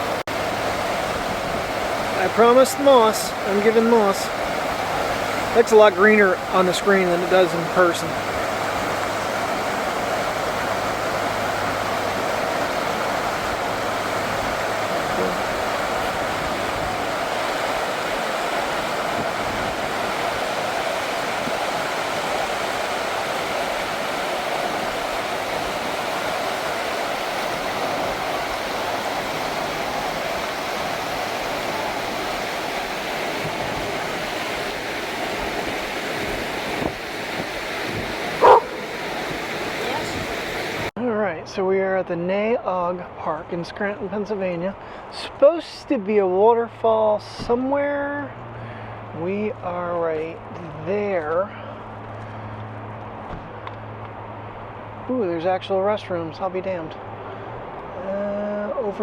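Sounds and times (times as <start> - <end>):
flowing water rushing: 0.0 - 41.0.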